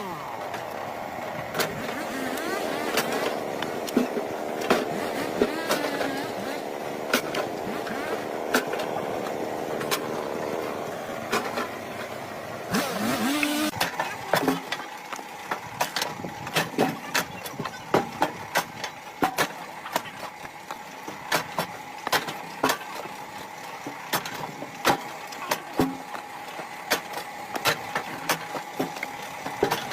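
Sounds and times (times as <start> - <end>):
engine humming: 0.0 - 29.9.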